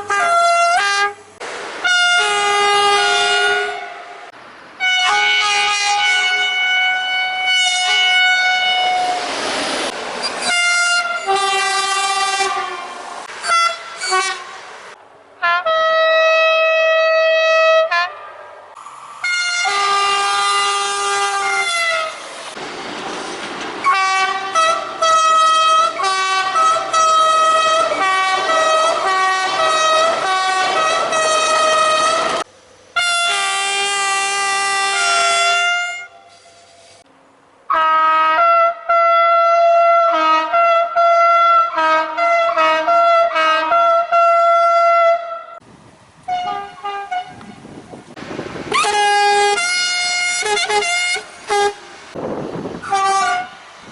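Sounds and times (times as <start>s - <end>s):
two-tone train horn: 0.0s - 1.2s, 1.8s - 4.2s, 4.8s - 9.3s, 10.4s - 14.5s, 19.2s - 22.2s, 23.8s - 32.4s, 33.0s - 36.4s, 37.7s - 45.6s, 46.3s - 47.5s, 48.8s - 51.9s, 52.8s - 53.6s
passing train rushing: 0.0s - 53.9s.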